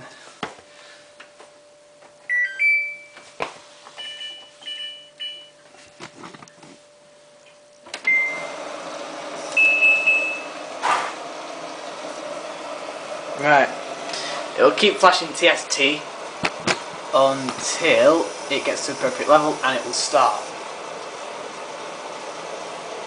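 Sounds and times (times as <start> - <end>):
washing machine beeps: 2.2 - 3.3, 3.9 - 5.6, 7.9 - 8.7, 9.4 - 10.7.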